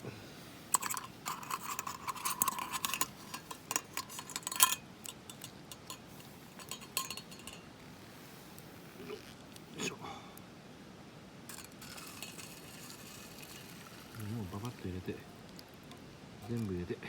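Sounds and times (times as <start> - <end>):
metal cookware clinking and rattling: 0.8 - 7.7, 11.5 - 14.1.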